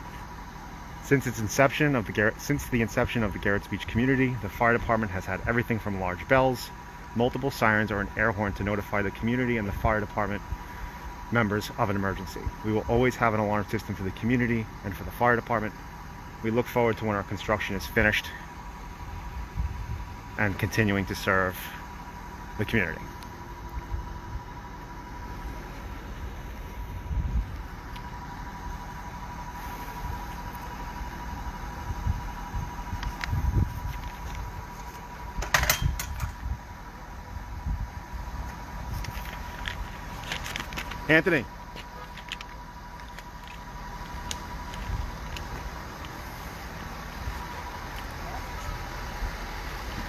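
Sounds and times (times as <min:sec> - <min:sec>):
low rumble and hiss: 0:00.0 - 0:50.0.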